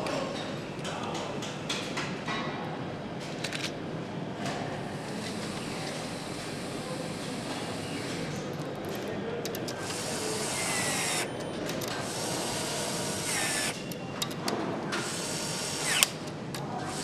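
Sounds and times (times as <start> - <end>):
power tools running in bursts: 9.9 - 11.3, 12.1 - 13.8.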